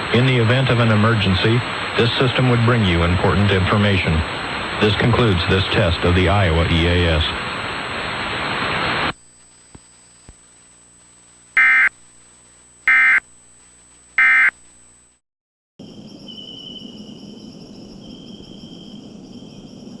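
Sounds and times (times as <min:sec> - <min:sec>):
low hiss: 0:00.0 - 0:15.1.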